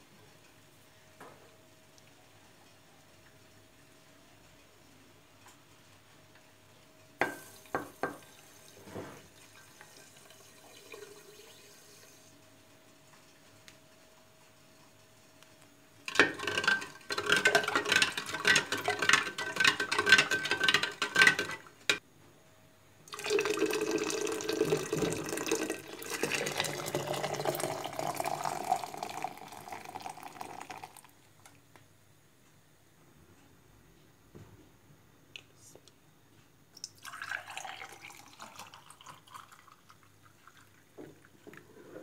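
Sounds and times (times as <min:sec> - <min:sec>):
liquid pouring into a container: 0:08.6 - 0:12.2, 0:23.1 - 0:31.1, 0:36.8 - 0:42.0.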